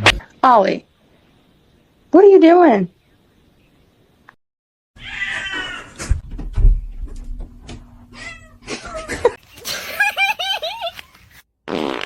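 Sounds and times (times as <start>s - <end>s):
cat meowing: 5.0s - 6.0s, 8.2s - 9.2s
low thuds: 6.0s - 8.1s.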